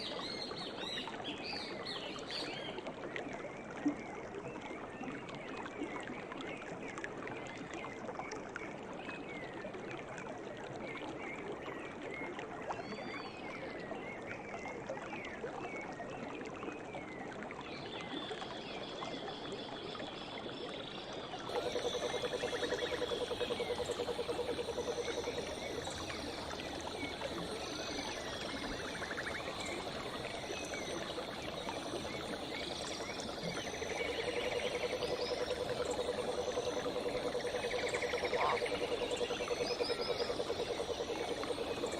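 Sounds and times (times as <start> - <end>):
flowing water rushing: 21.4 - 41.9.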